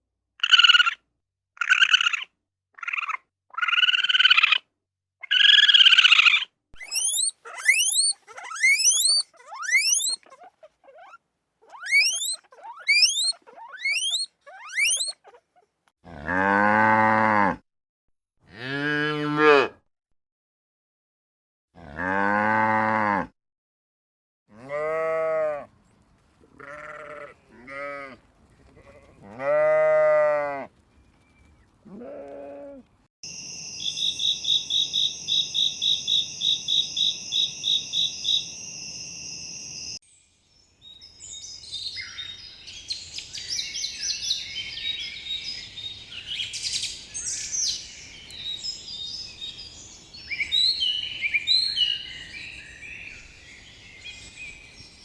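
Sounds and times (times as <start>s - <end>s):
birds chirping: 6.8s - 15.4s, 33.7s - 40.0s, 40.8s - 55.0s
sheep bleating: 26.6s - 28.2s, 31.9s - 32.8s.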